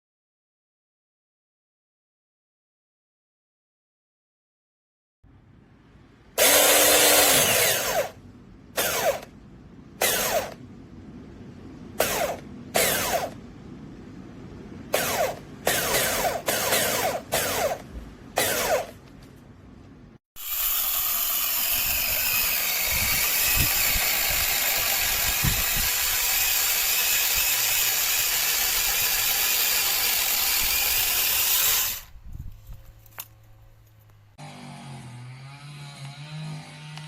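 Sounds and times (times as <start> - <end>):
mini chainsaw running: 6.4 - 8.2, 8.8 - 9.3, 10.0 - 10.6, 12.0 - 13.4, 14.9 - 19.0, 20.4 - 32.1.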